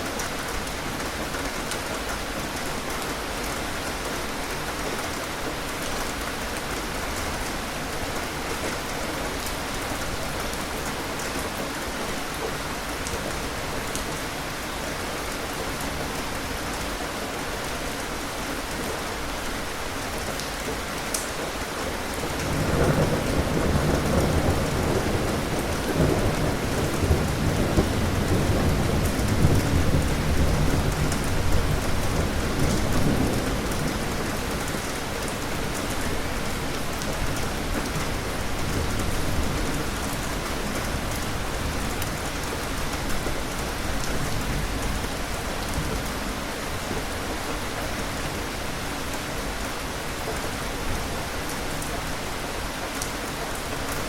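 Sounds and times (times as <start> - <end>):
steady rain falling: 0.0 - 54.0
rolling thunder rumble: 22.2 - 41.9.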